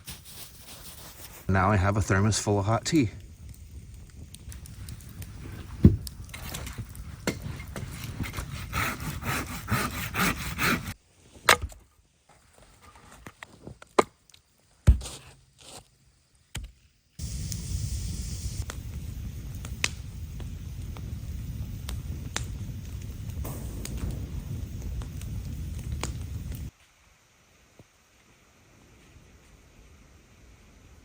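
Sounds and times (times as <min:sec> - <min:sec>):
wood cracking and crackling: 0:01.5 - 0:10.6, 0:18.7 - 0:26.7.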